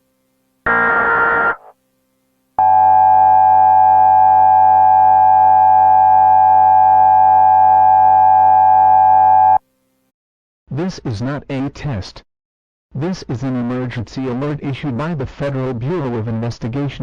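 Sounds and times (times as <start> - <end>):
emergency alert attention tone: 0.7 - 1.7, 2.6 - 9.6.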